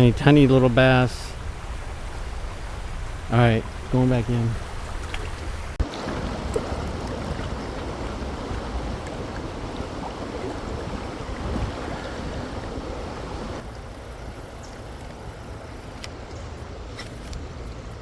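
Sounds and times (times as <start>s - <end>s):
creek rushing: 0.0s - 18.0s.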